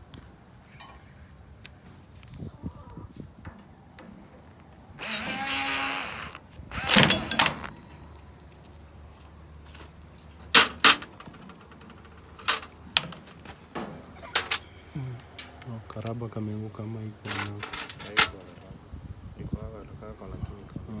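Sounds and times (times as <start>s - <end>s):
sharp clicks and knocks: 5.0s - 7.7s, 10.6s - 14.6s, 17.3s - 18.6s
loud clatter: 10.6s - 14.6s, 17.3s - 18.5s.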